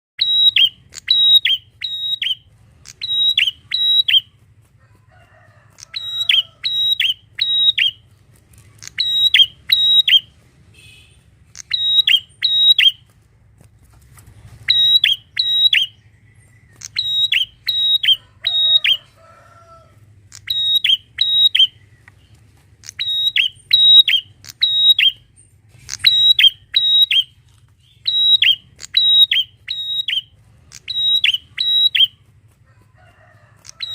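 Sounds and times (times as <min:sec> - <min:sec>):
bird singing high sharp notes: 0:00.2 - 0:04.3, 0:05.9 - 0:08.0, 0:08.8 - 0:13.0, 0:14.7 - 0:19.0, 0:20.3 - 0:22.0, 0:22.8 - 0:32.2.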